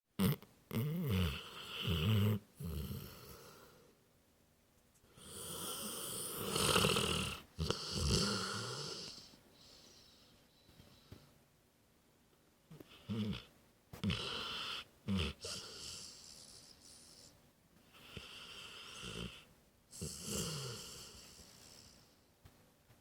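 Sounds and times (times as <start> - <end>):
dog snoring: 0.2 - 3.8, 5.1 - 10.3, 12.7 - 22.2.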